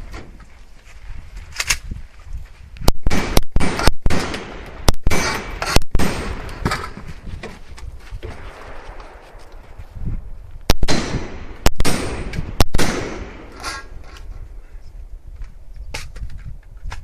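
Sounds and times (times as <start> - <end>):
shotgun shots with echo: 3.0 - 6.8, 10.7 - 13.6.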